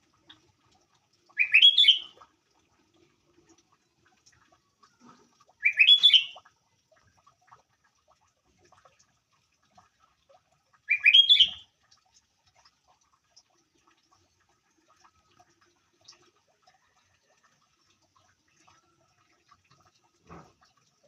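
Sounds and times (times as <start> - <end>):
bulbul singing bubbly notes: 1.4 - 2.2, 5.6 - 6.5, 10.9 - 11.6.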